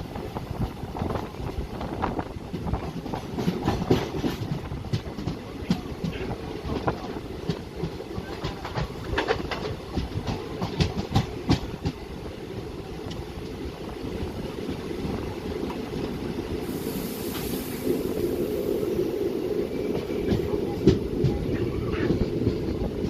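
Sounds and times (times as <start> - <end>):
train rumbling on rails: 0.0 - 23.0
wheels clacking over rail joints: 1.0 - 16.4, 19.8 - 23.0
high hiss: 16.4 - 20.7.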